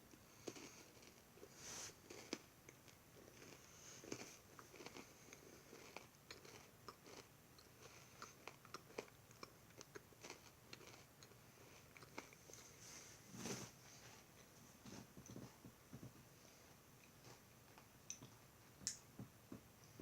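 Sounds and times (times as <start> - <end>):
chewing and crunching granola: 0.2 - 12.7, 17.0 - 18.4.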